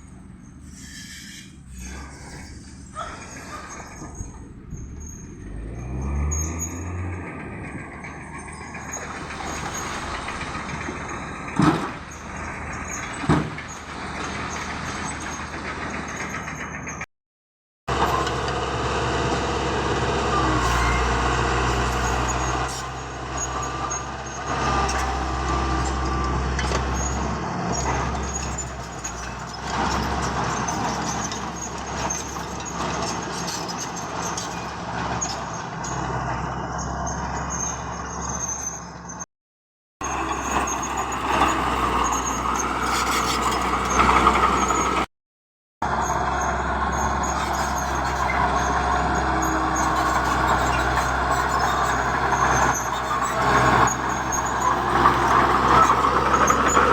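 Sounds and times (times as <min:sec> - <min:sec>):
heavy diesel machinery running: 0:00.0 - 0:17.1, 0:17.9 - 0:39.1, 0:40.0 - 0:45.1, 0:45.8 - 0:56.9
squealing: 0:00.7 - 0:15.4, 0:40.0 - 0:45.0, 0:46.9 - 0:56.9.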